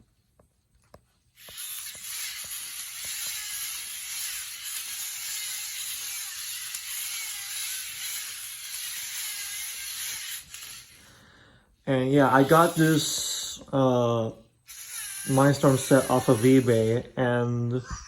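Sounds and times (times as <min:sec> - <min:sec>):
small gear clicks: 0:01.4 - 0:07.1
robot servo motors whirring: 0:01.4 - 0:11.0, 0:12.3 - 0:13.2, 0:14.7 - 0:17.0.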